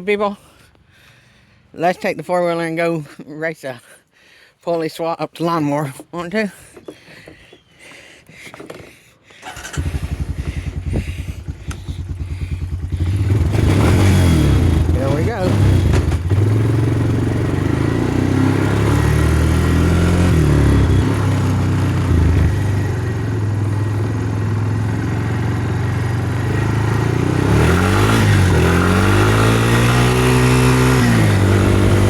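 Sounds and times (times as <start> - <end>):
small engines revving: 9.4 - 32.0.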